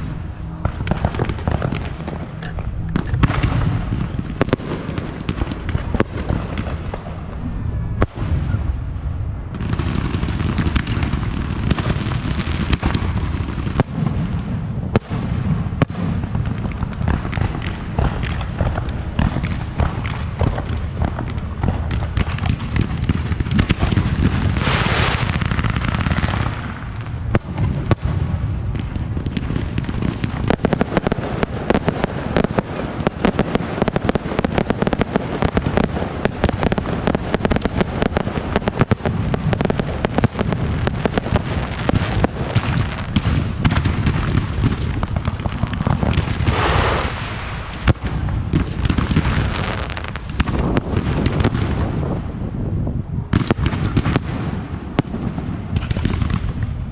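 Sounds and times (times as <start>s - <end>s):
fireworks crackling: 0.0s - 56.9s
fireworks hissing: 24.5s - 26.9s, 45.4s - 50.7s.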